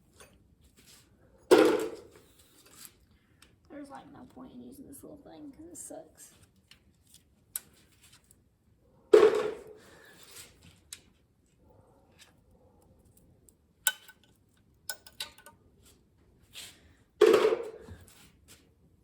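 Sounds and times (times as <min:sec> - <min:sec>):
metal tools clattering: 0:14.9 - 0:15.6.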